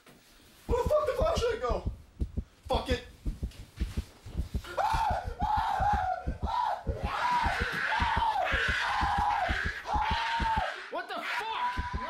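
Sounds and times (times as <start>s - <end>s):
rapid low thuds: 0.7s - 10.7s, 11.7s - 12.0s
person screaming: 4.6s - 12.0s.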